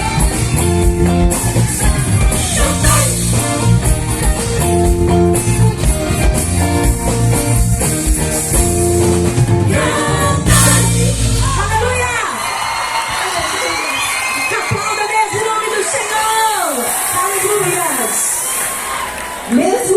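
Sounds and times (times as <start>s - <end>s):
drum kit: 0.0s - 12.2s
guitar: 0.0s - 12.4s
bass: 0.0s - 13.8s
person singing: 2.4s - 3.7s.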